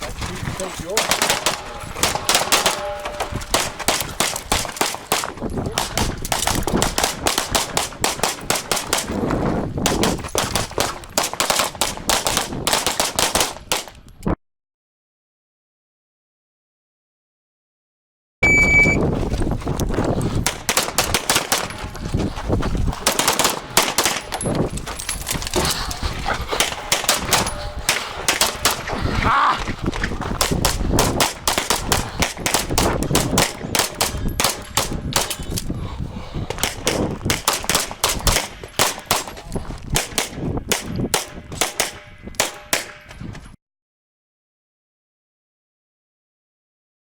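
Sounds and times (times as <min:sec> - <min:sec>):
handgun shots: 0:00.9 - 0:09.2, 0:26.6 - 0:28.9, 0:30.4 - 0:35.6, 0:36.6 - 0:43.0.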